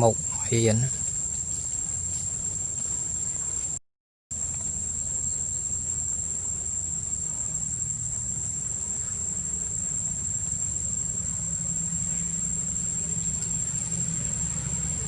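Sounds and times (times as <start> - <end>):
insects droning: 0.0 - 15.0
low background rumble: 4.4 - 15.0.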